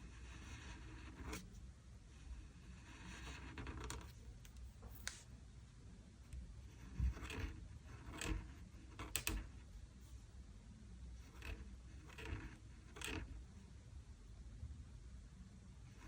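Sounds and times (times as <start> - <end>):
pen scratching on paper: 0.0 - 1.5, 2.2 - 4.2, 6.6 - 9.6, 11.2 - 13.4.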